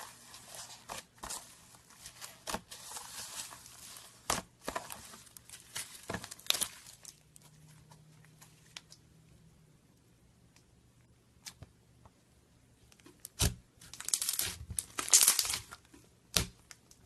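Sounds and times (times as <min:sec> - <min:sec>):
slime clicking and crackling: 0:13.3 - 0:16.8.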